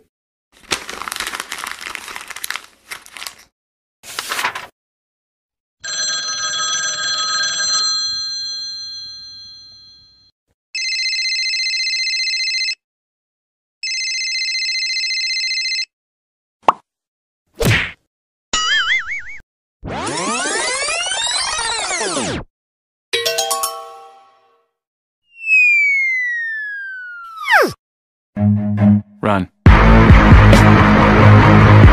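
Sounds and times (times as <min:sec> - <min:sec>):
telephone bell ringing: 0:05.8 - 0:12.8, 0:13.8 - 0:15.9.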